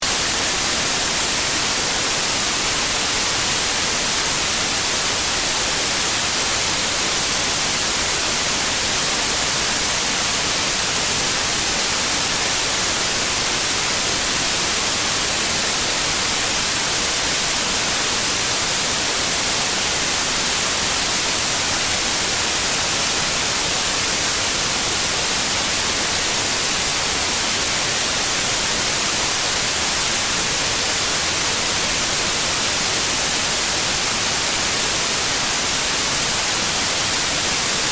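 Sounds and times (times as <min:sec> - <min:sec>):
white noise hiss: 0:00.0 - 0:37.9.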